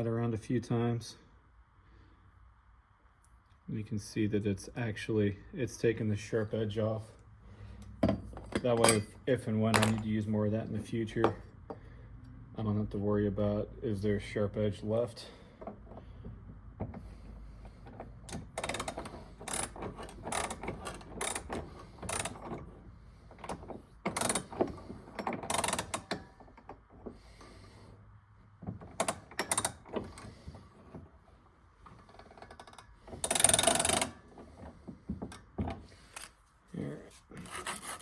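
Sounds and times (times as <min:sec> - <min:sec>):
tools clicking and knocking: 0:07.8 - 0:10.1, 0:15.6 - 0:27.5, 0:28.6 - 0:31.1, 0:31.8 - 0:36.4.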